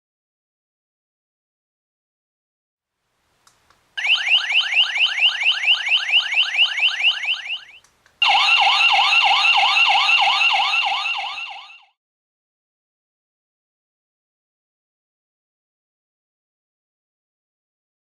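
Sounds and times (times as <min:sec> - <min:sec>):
warbling alarm tone: 0:04.0 - 0:12.0
rising whoop alarm tone: 0:06.6 - 0:11.8.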